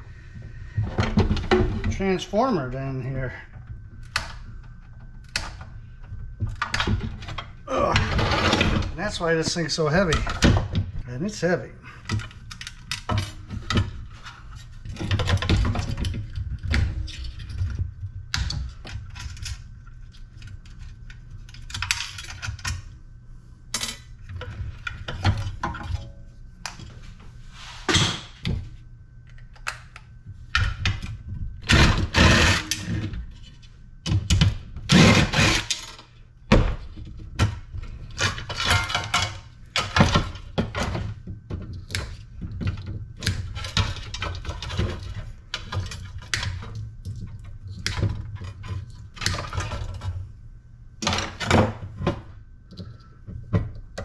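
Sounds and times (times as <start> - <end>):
metal rasping: 31.7 - 33.0, 34.9 - 35.8.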